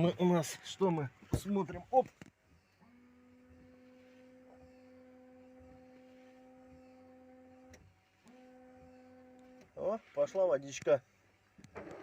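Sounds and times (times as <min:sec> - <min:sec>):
washer pump motor humming: 0:02.4 - 0:10.6.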